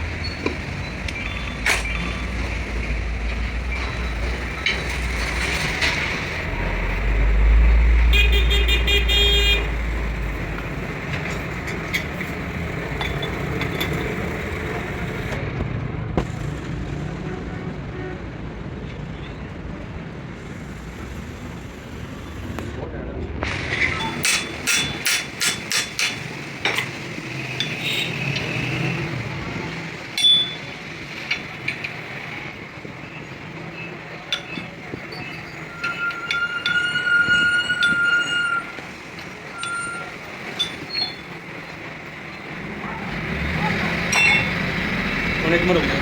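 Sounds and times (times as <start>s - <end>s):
passing road traffic: 0.0s - 46.0s
vehicle horn: 8.0s - 9.8s
sharp metallic taps: 24.1s - 28.6s.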